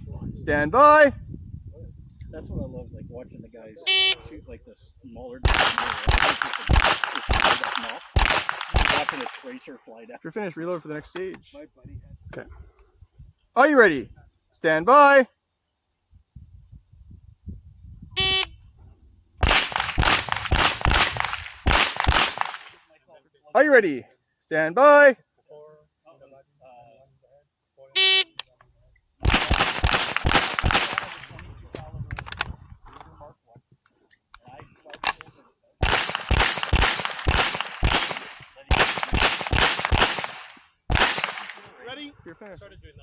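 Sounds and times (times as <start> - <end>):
shot timer beep: 3.9 - 4.2
rapid gunshots: 5.4 - 9.7, 19.4 - 22.8, 29.2 - 31.4, 35.8 - 41.8.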